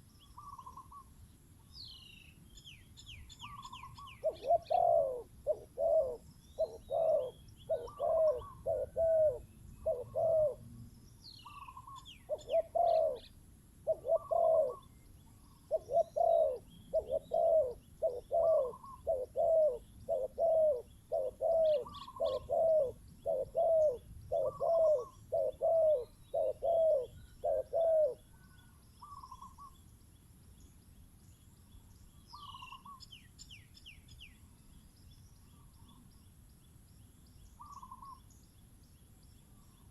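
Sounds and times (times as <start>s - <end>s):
small birds chirping: 0.0s - 39.9s
dove cooing: 3.4s - 10.8s, 11.4s - 29.8s, 37.6s - 38.2s.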